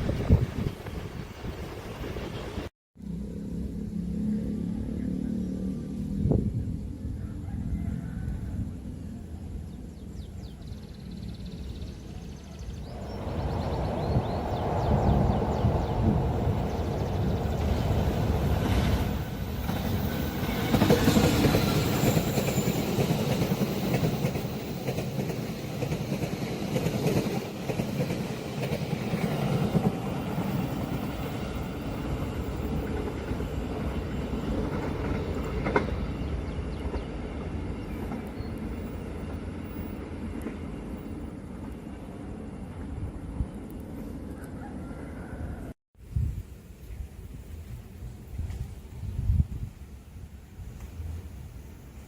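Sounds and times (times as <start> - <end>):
train wheels on track: 12.6 - 44.9.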